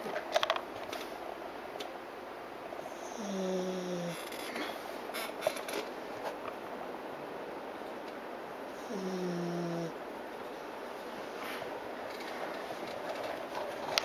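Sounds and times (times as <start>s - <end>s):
dog snoring: 2.8s - 4.7s, 8.8s - 10.0s.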